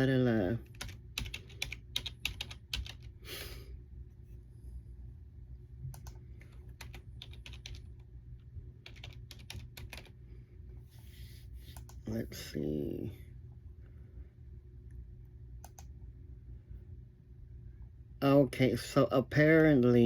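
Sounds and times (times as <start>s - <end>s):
faint low hum: 0.0s - 20.0s
typing on computer keyboard: 0.7s - 3.1s, 6.0s - 8.0s, 8.8s - 10.1s.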